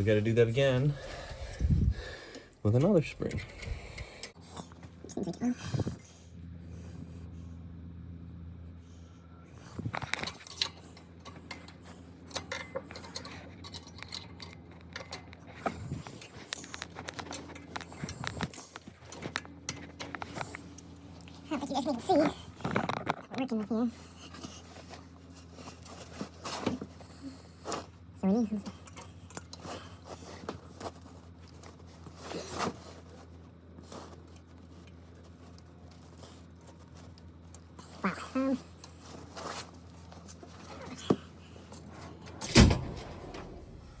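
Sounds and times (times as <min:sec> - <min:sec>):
tools and parts knocking and clicking: 0:10.0 - 0:15.4.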